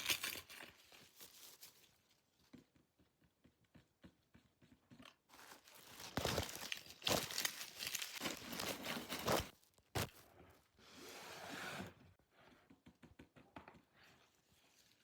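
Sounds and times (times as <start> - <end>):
packaging crinkling and tearing: 0.0 - 2.0, 5.3 - 10.3.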